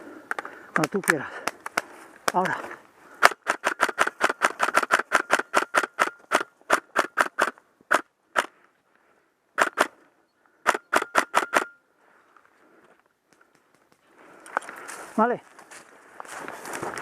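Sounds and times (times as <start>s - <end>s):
airsoft rifle shots: 3.2s - 8.5s, 9.6s - 9.9s, 10.6s - 11.8s.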